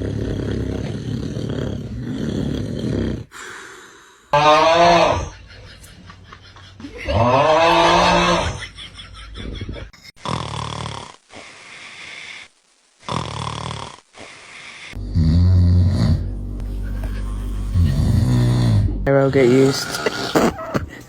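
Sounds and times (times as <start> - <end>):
man snoring: 0.0 - 5.4, 10.2 - 12.4, 13.0 - 21.0.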